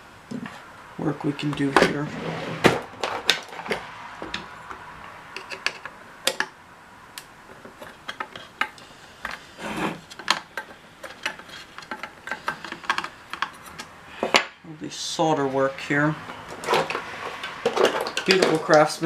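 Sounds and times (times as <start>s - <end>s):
light clicks and taps of handled parts: 10.1s - 14.5s.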